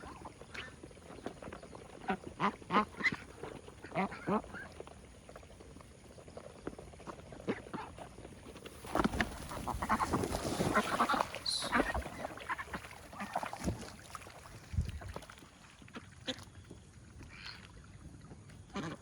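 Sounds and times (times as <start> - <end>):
water splashing: 8.5 - 16.4
ducks quacking: 8.7 - 13.6, 18.7 - 19.0.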